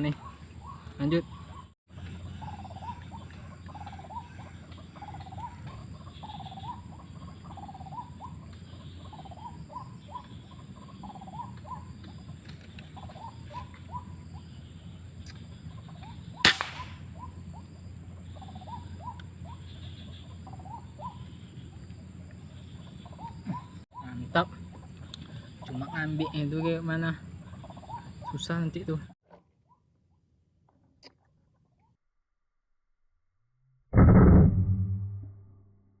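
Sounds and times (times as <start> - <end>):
steady low hum: 0.0 - 28.3
gunshot crack: 16.4 - 17.0.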